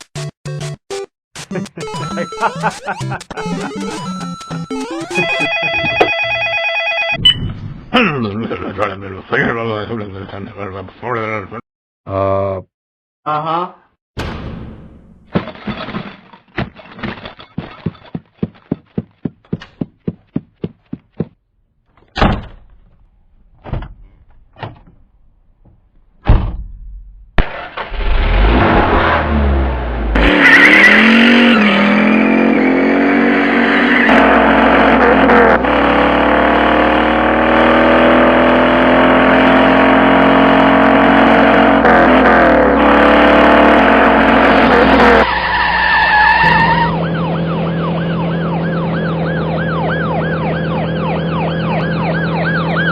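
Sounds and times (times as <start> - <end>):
car engine starting and revving: 27.4 - 45.3.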